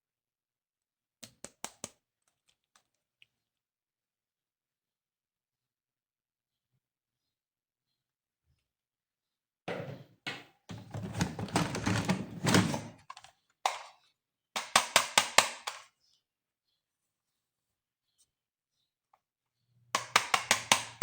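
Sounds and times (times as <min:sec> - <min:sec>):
plastic toys knocking and scraping: 0:10.7 - 0:14.0.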